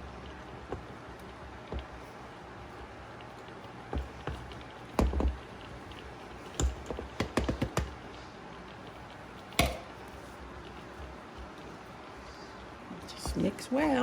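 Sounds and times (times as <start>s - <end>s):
utensils knocking on mixing bowl: 4.0s - 5.4s, 6.5s - 8.0s, 9.6s - 9.9s.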